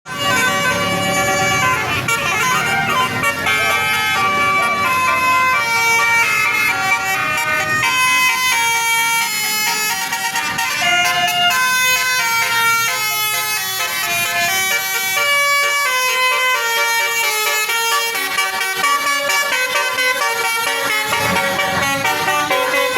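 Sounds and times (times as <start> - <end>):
bus horn playing melody: 0.1 - 22.9.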